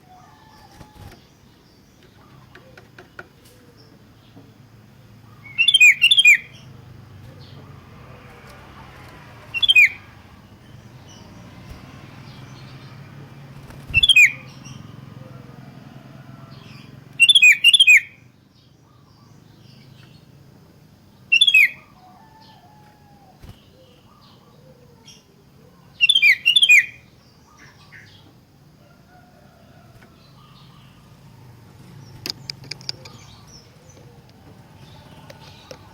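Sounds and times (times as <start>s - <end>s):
bird whistled calls: 5.4s - 6.7s, 9.5s - 10.4s, 13.9s - 14.9s, 17.2s - 18.2s, 21.3s - 21.9s, 26.0s - 27.1s.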